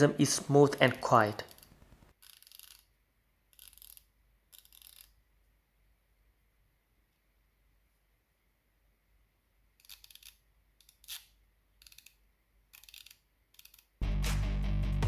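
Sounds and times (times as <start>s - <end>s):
ratchet pawl clicking: 1.5s - 2.9s, 3.5s - 5.2s, 9.8s - 14.0s.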